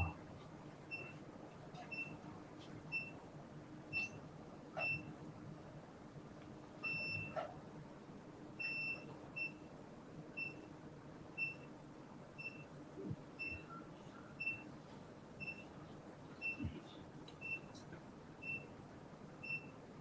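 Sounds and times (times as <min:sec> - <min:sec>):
electronic equipment beeps: 0:06.9 - 0:07.4.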